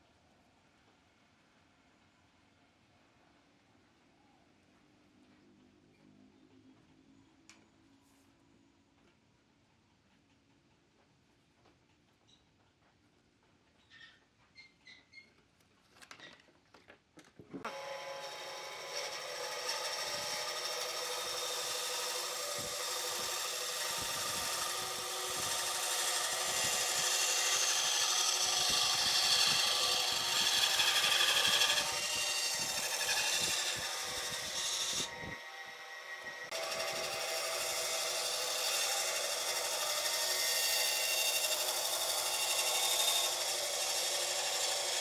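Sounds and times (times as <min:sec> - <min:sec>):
electric power tool motor whine: 0:17.7 - 0:45.0.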